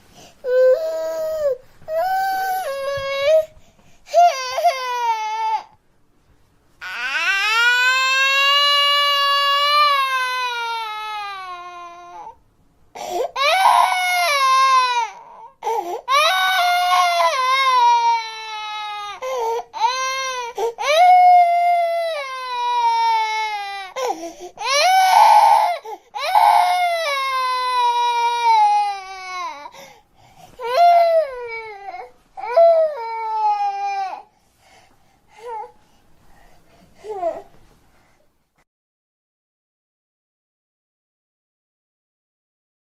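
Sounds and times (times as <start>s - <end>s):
newborn baby crying: 4.1s - 5.7s, 6.8s - 12.4s, 13.0s - 29.9s, 30.6s - 34.3s.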